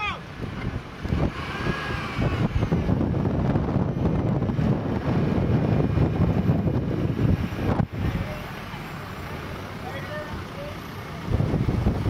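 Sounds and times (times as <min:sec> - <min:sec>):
wind buffeting microphone: 0:00.3 - 0:08.3, 0:11.2 - 0:12.0.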